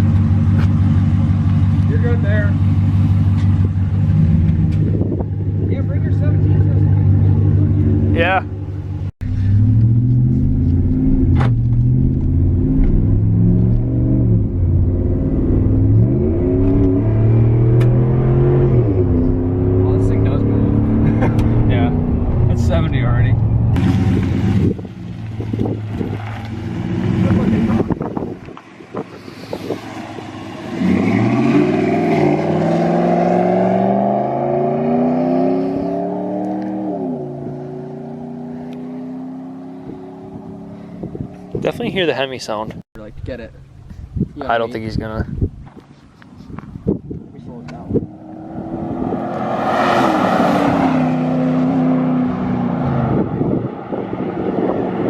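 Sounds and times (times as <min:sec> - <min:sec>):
gear shift pitch drop: 0:00.0 - 0:41.8
truck engine accelerating: 0:00.0 - 0:42.1.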